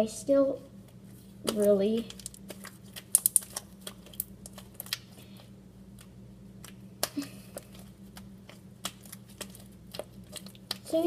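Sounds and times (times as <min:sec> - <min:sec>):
slime clicking and popping: 0:01.5 - 0:05.1.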